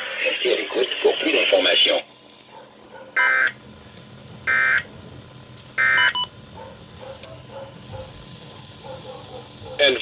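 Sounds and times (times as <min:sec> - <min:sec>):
screechy digital data bursts: 0:04.5 - 0:04.9.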